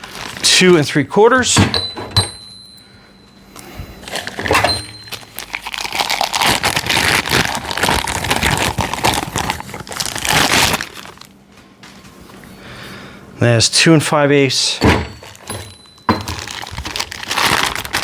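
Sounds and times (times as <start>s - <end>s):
plastic wrapping crinkling: 0.0s - 1.4s, 4.0s - 11.5s, 15.2s - 18.0s.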